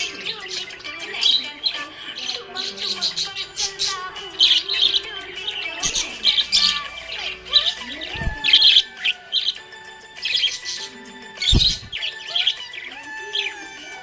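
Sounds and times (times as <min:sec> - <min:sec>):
budgerigars chirping: 0:00.0 - 0:14.0
low thump: 0:11.5 - 0:12.0.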